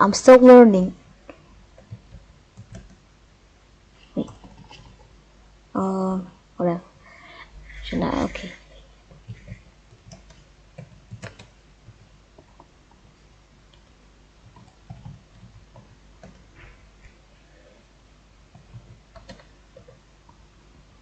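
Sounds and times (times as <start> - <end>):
keyboard keystroke clicks: 10.0 - 11.5.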